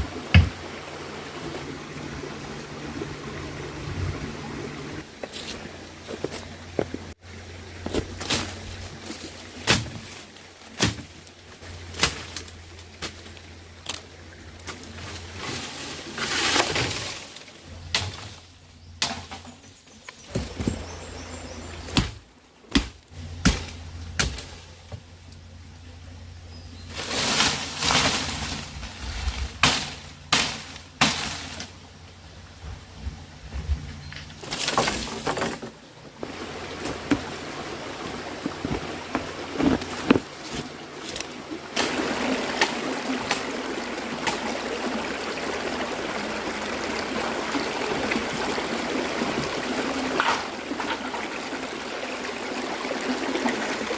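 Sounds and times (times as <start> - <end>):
sharp knocks and cracks: 10.8 - 11.2, 21.9 - 25.0, 29.6 - 31.7
rustling: 26.8 - 31.8.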